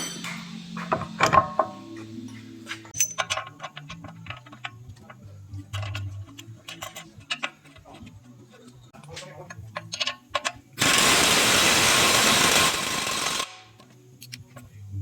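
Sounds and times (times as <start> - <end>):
quiet background music: 0.0 - 15.0
hand tools clicking and clinking: 2.9 - 8.8, 9.5 - 11.0.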